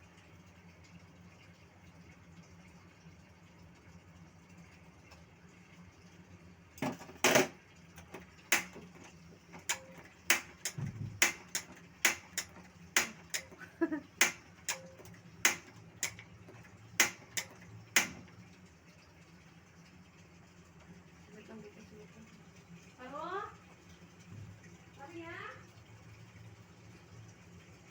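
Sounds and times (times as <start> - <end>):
sharp clicks and knocks: 6.8 - 18.4.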